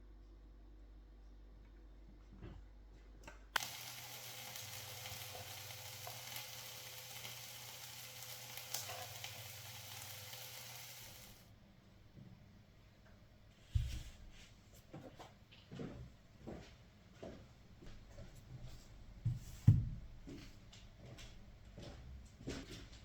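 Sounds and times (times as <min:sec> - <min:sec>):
steady hiss: 0:03.6 - 0:11.5.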